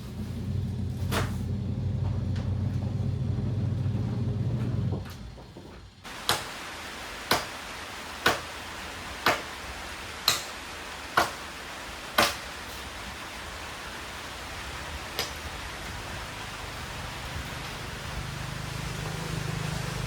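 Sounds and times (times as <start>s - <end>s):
washing machine motor hum: 0.0s - 20.0s
hiss of running water: 5.6s - 20.0s.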